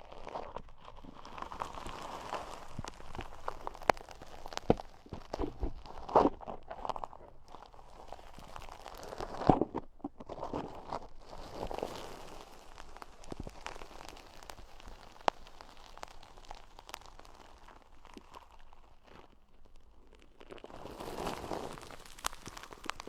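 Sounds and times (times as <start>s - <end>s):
ear-cleaning scratching and crackling: 0.0s - 23.0s.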